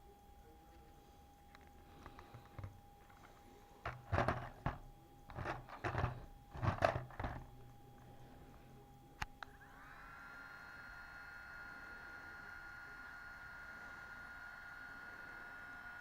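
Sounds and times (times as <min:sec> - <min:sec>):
faint high whine: 0:00.0 - 0:16.0
plastic clicks and knocks: 0:01.6 - 0:03.2, 0:03.8 - 0:07.5.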